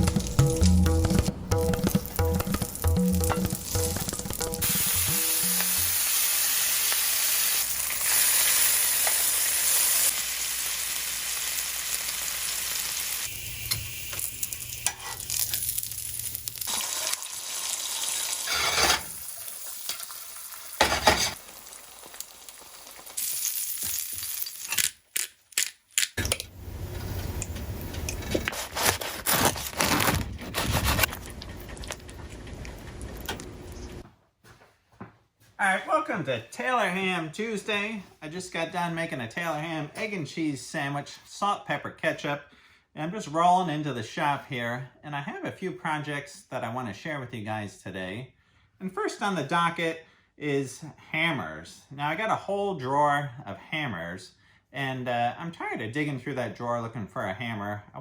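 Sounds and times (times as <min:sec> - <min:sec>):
cooking knocks and scrapes: 0:00.0 - 0:06.0, 0:18.4 - 0:19.2, 0:20.8 - 0:21.4, 0:26.2 - 0:34.0
meat sizzling in a pan: 0:03.0 - 0:24.8.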